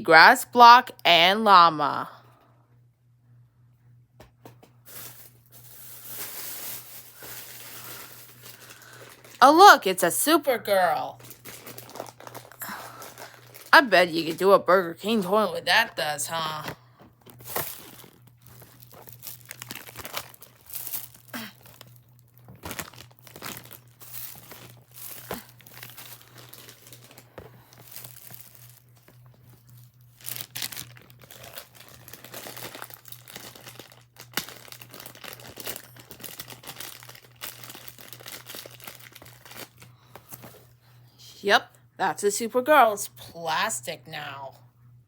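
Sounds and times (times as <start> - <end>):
steady low hum: 0.0 - 45.0
plastic packaging crinkling and tearing: 4.8 - 9.4, 10.9 - 14.4, 17.1 - 40.8.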